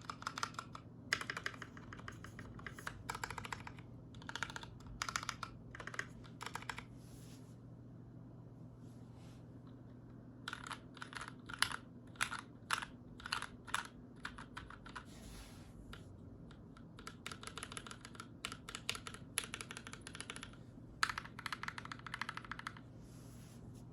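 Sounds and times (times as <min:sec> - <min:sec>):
mechanical keyboard typing: 0:00.0 - 0:06.9, 0:10.4 - 0:15.1, 0:16.5 - 0:22.8.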